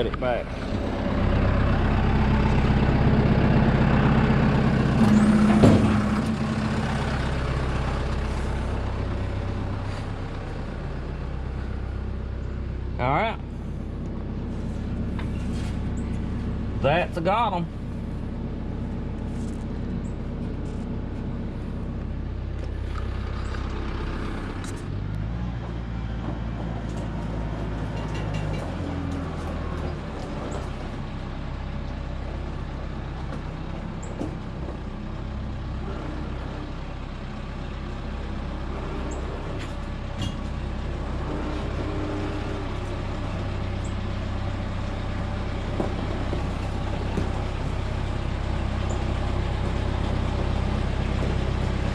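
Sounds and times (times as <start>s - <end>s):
tractor engine running: 0.0s - 51.9s.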